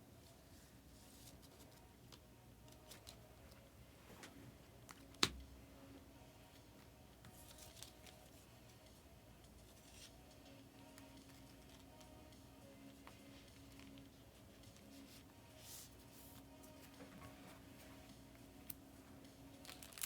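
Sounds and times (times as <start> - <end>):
trading cards rustling and clicking: 1.0 - 3.6, 7.1 - 12.2, 18.1 - 20.0.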